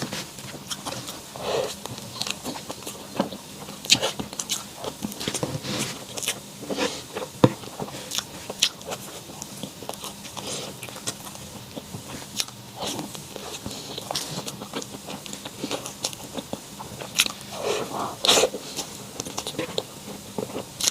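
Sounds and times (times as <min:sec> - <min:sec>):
person chewing food: 0:00.0 - 0:20.9.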